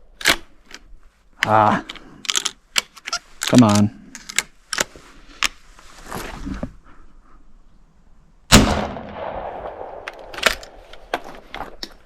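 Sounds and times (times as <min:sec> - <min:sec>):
shotgun shot with echo: 0:08.5 - 0:10.3
metallic clicks of gun action: 0:10.0 - 0:11.2.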